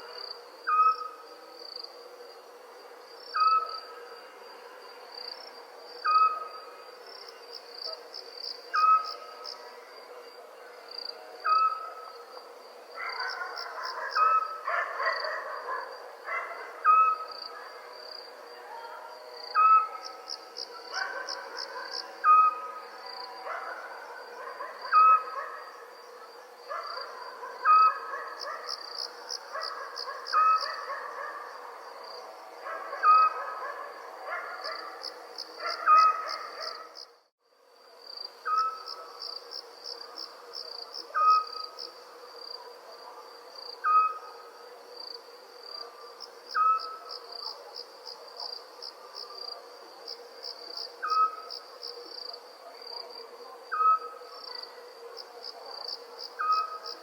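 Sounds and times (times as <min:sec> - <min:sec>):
crickets trilling: 0:00.0 - 0:57.0
owl call: 0:43.8 - 0:44.4, 0:46.5 - 0:47.2.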